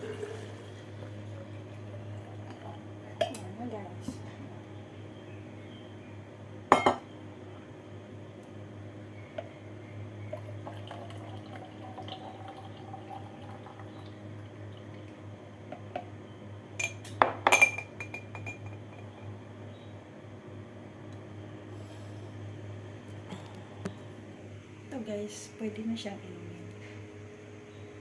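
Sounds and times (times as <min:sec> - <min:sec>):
faint liquid sounds: 0:00.0 - 0:04.4, 0:10.2 - 0:15.4
steady low hum: 0:00.0 - 0:28.0
glass and utensils clinking: 0:16.8 - 0:18.8.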